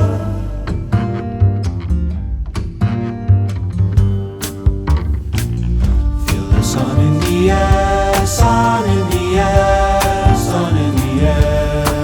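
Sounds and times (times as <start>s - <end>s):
song with singing over a beat: 0.0s - 1.3s, 6.0s - 12.0s.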